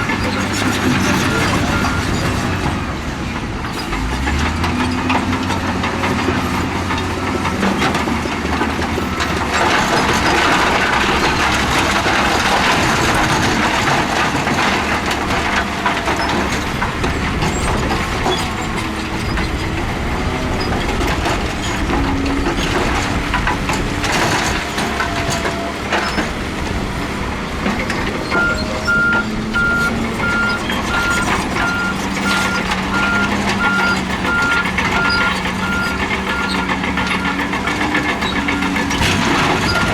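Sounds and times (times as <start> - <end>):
heavy machinery diesel engines: 0.0 - 39.9
reversing alarm beeping: 28.3 - 37.4.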